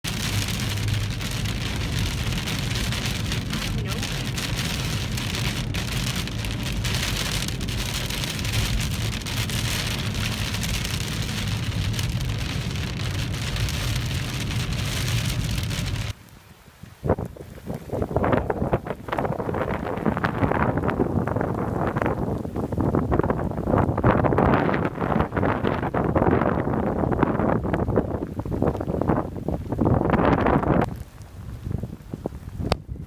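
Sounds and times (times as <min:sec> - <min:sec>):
steady rain falling: 0:00.0 - 0:18.2, 0:26.0 - 0:33.0.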